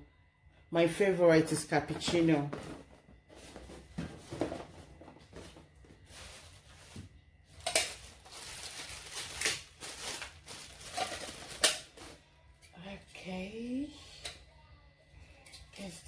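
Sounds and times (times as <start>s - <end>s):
packaging rustling: 2.3s - 12.2s.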